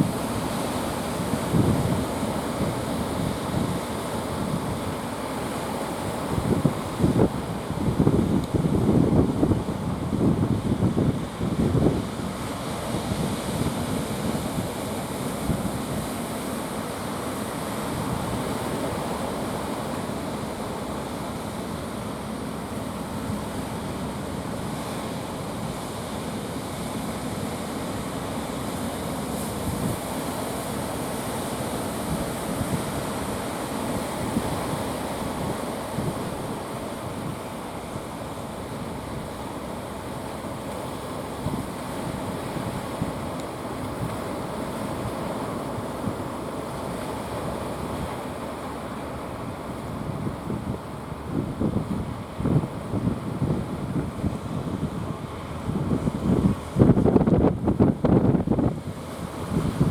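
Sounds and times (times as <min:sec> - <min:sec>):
wind gusting on microphone: 0:00.0 - 0:16.3, 0:33.9 - 0:59.9
sea surf washing: 0:00.0 - 0:59.9.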